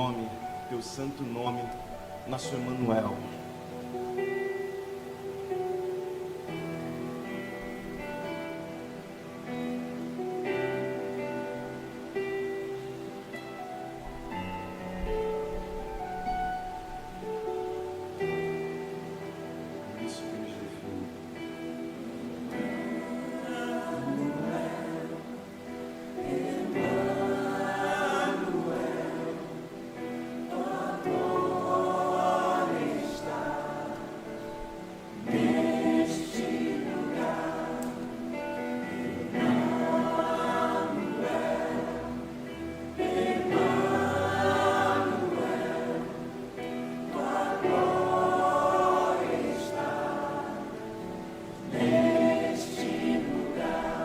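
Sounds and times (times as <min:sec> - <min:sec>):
choir singing a hymn: 0:00.0 - 0:54.0.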